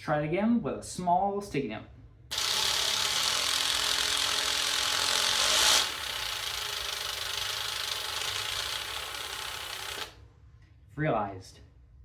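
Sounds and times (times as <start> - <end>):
motor and gears grinding whir: 2.3 - 10.1.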